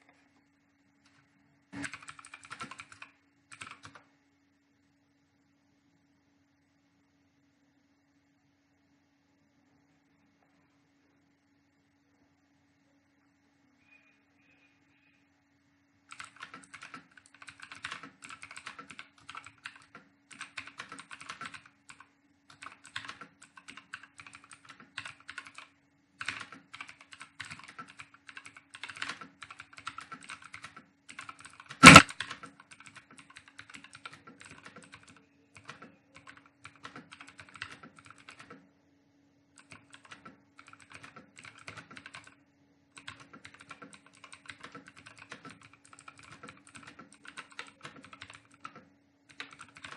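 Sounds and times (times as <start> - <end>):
faint steady hum: 0.0 - 49.9
fast typing on keyboard: 1.8 - 4.0, 16.1 - 38.6, 39.6 - 49.9
sharp knock: 31.8 - 32.1.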